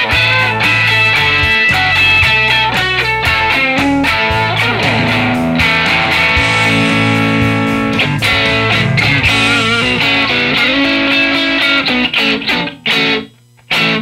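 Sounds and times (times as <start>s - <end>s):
electric guitar through amp: 0.0s - 14.0s.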